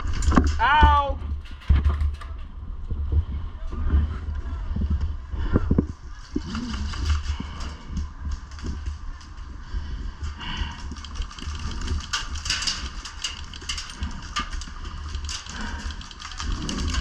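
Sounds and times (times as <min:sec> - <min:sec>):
wind buffeting microphone: 0:01.2 - 0:17.0
clicks knocks and rustling: 0:01.3 - 0:02.5.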